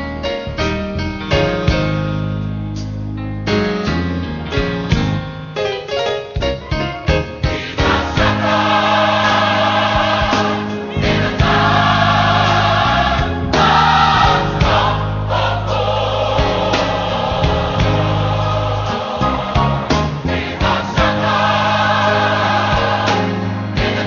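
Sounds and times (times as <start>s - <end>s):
bass and keyboard accompaniment: 0.0s - 24.0s
gospel choir singing: 7.4s - 24.0s.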